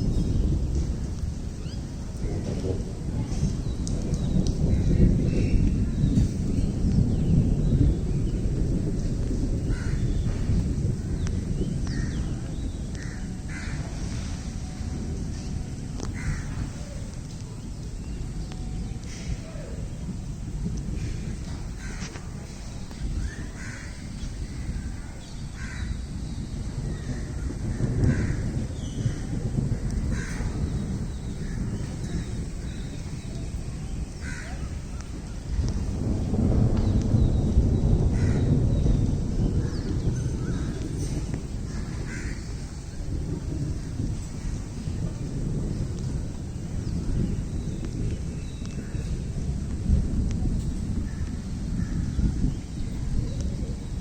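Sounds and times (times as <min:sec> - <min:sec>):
heavy rain: 0:00.0 - 0:54.0
crows cawing: 0:13.0 - 0:13.9, 0:16.2 - 0:16.7, 0:21.8 - 0:22.2, 0:23.3 - 0:24.1, 0:25.6 - 0:25.9, 0:30.1 - 0:30.5, 0:34.2 - 0:34.7, 0:41.7 - 0:42.6.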